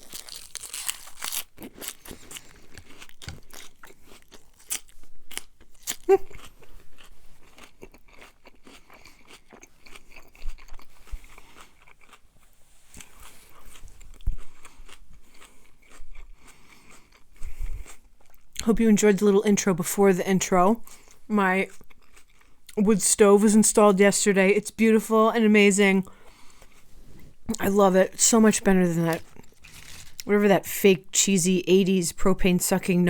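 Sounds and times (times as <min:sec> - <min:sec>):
chewing crunchy salad: 0:00.0 - 0:18.6, 0:20.8 - 0:22.8, 0:26.0 - 0:30.3.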